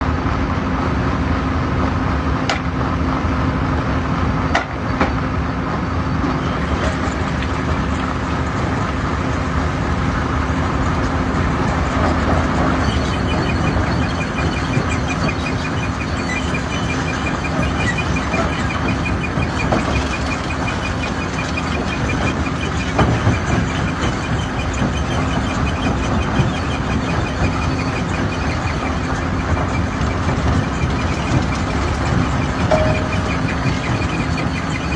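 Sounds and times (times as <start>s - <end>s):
stone crusher running: 2.4s - 34.9s
sharp knocks: 4.5s - 5.2s, 32.7s - 33.9s.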